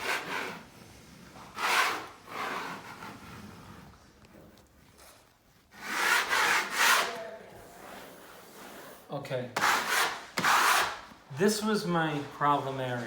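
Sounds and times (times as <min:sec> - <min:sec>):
tool rubbing over leather: 0:00.0 - 0:11.2.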